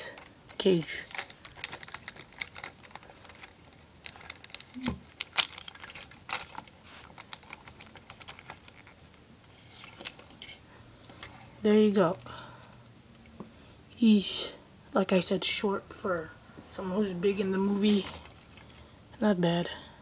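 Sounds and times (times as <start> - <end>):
plastic toy parts clicking: 0.2 - 9.0.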